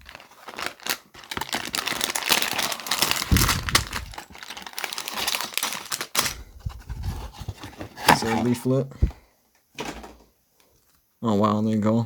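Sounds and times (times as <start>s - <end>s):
plastic bags crinkling: 0.0s - 6.5s.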